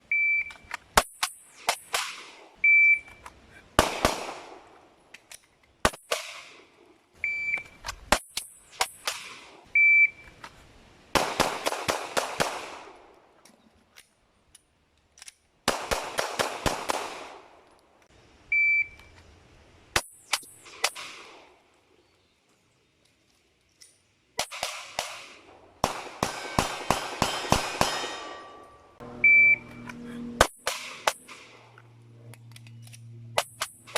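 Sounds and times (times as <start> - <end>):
airsoft gun shots: 1.0 - 2.4, 3.8 - 4.6, 24.4 - 28.4, 30.4 - 31.6
shot timer beep: 2.6 - 3.2, 29.2 - 29.8.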